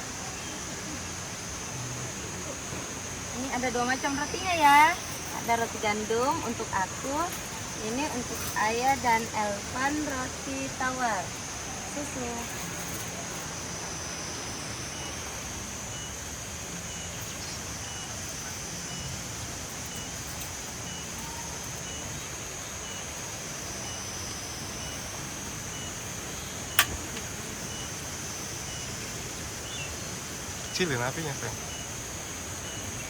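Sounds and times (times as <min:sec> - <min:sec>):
insect drone: 0:00.0 - 0:33.0
sharp click: 0:26.8 - 0:27.3.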